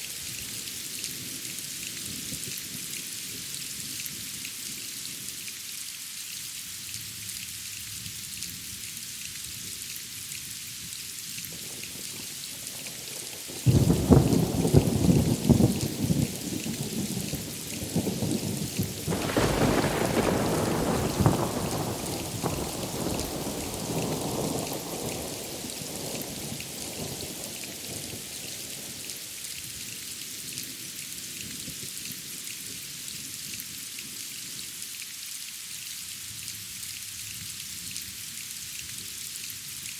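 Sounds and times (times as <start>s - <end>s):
heavy rain hissing: 10.6s - 31.3s
thunder crack and rumble: 13.7s - 25.7s.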